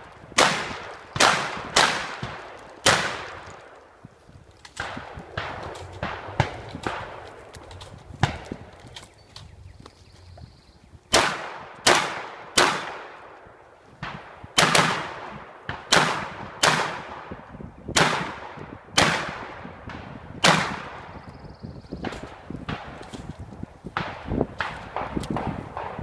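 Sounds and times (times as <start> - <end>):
shotgun shots echoing: 0.0 - 3.8, 4.8 - 7.4, 11.1 - 13.4, 14.0 - 17.4, 18.0 - 21.2.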